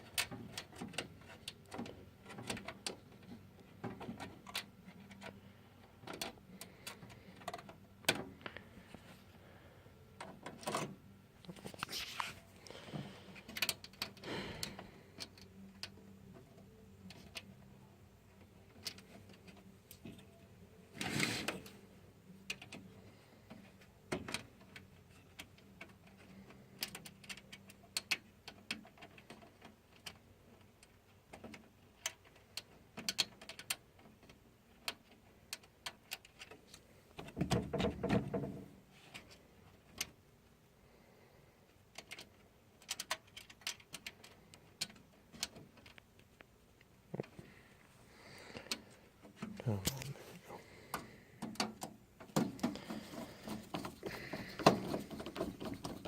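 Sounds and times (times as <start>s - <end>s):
clicks and knocks of computer parts: 0.0s - 5.4s, 6.0s - 8.4s, 10.2s - 12.0s, 37.2s - 40.1s, 50.9s - 56.0s.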